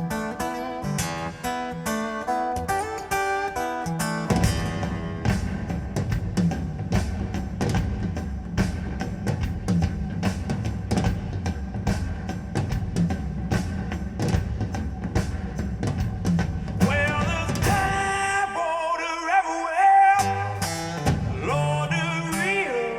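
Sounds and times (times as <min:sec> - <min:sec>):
bass-heavy drum beat: 0:04.3 - 0:18.4, 0:20.7 - 0:22.2
person singing: 0:16.8 - 0:22.9.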